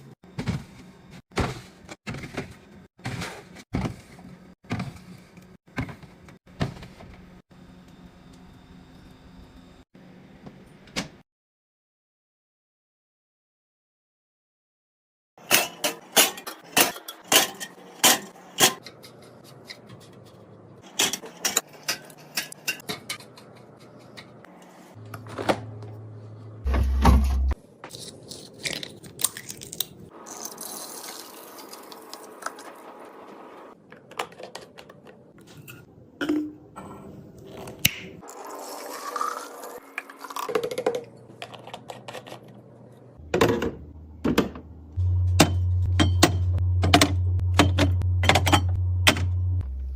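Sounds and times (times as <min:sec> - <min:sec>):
refrigerator hum: 0:19.9 - 0:28.5
containers knocking and clinking on shelves: 0:40.4 - 0:42.5, 0:43.2 - 0:44.7, 0:45.3 - 0:49.4.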